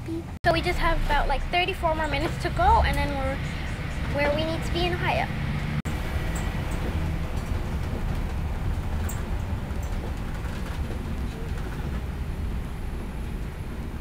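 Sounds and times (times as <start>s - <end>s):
vehicle engine and road noise: 0.0s - 14.0s
faint rattles: 6.3s - 12.7s.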